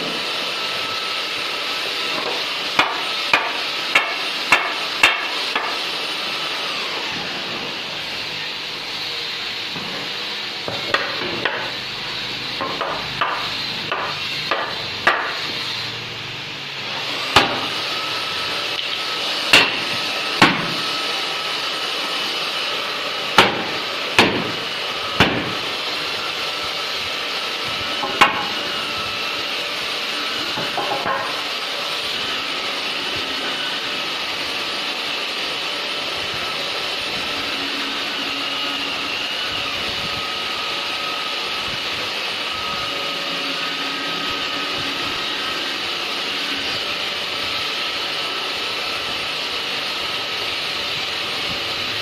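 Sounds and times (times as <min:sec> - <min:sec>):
hammer striking wood: 0:02.2 - 0:05.8, 0:10.6 - 0:11.7, 0:12.6 - 0:15.4, 0:17.3 - 0:17.8, 0:19.5 - 0:20.8, 0:23.4 - 0:24.6, 0:25.2 - 0:25.6, 0:28.0 - 0:28.5.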